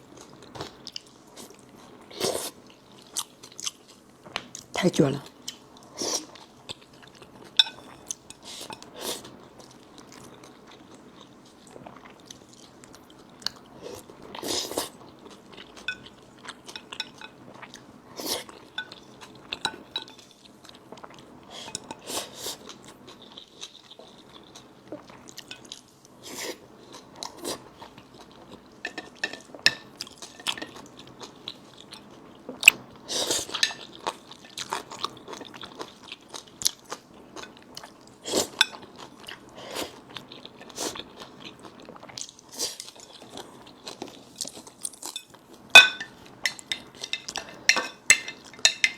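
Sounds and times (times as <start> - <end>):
chewing and crunching: 0.0 - 4.8, 5.4 - 48.9
utensils clinking on a dish: 7.6 - 8.9, 15.9 - 16.1, 16.7 - 17.4, 18.8 - 19.0, 19.6 - 20.3, 21.6 - 22.1, 28.8 - 30.8, 45.1 - 48.9.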